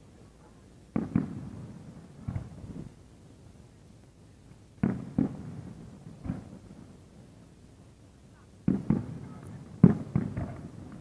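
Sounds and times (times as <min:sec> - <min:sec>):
fireworks bangs with rumbling echo: 0:00.9 - 0:03.0, 0:04.8 - 0:07.4, 0:08.6 - 0:11.0.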